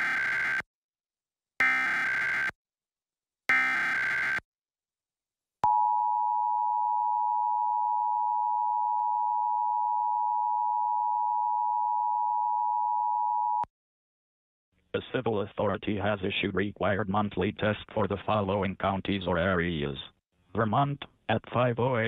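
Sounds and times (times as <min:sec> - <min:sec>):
harsh digital data warble: 0:00.0 - 0:00.6.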